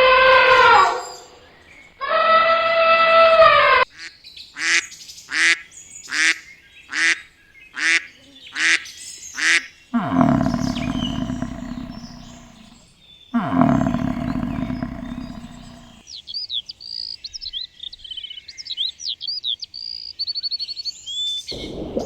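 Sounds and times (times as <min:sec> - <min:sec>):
long loud animal calls: 0:10.0 - 0:12.8, 0:13.4 - 0:16.0
short animal calls: 0:10.0 - 0:12.8, 0:13.4 - 0:16.0.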